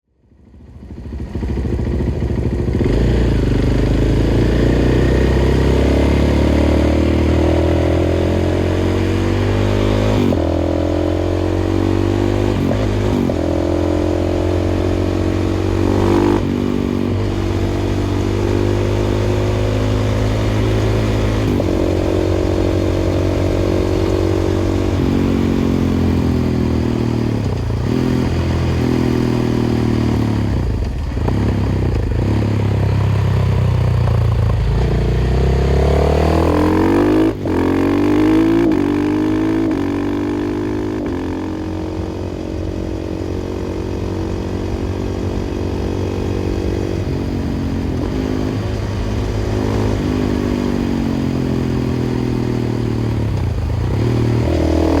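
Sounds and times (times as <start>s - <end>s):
motorcycle engine accelerating: 0.3s - 55.0s.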